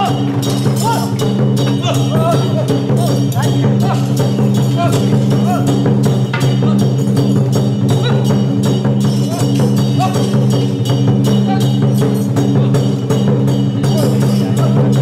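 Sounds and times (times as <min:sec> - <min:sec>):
cymbals crashing: 0:00.0 - 0:15.0
drums beating: 0:00.0 - 0:15.0.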